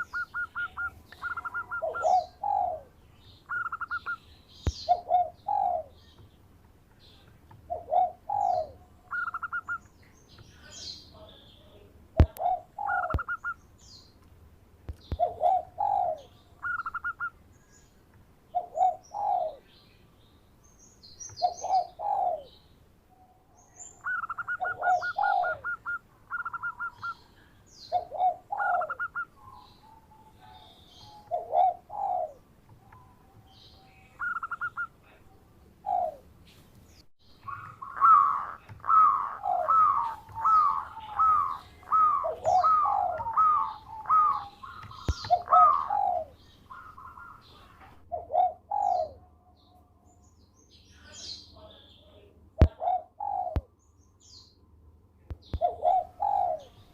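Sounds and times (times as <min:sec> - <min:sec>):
dove cooing: 0:00.0 - 0:06.0, 0:07.5 - 0:09.8, 0:10.6 - 0:13.6, 0:15.0 - 0:17.4, 0:18.5 - 0:19.7, 0:21.3 - 0:22.6, 0:23.9 - 0:36.3, 0:37.4 - 0:49.3, 0:52.6 - 0:53.7, 0:55.4 - 0:56.9
small birds chirping: 0:00.0 - 0:56.9.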